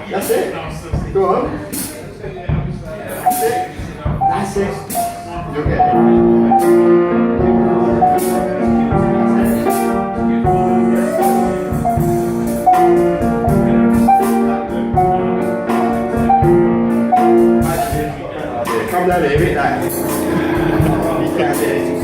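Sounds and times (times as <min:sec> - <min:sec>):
instrumental music: 0:01.8 - 0:22.0.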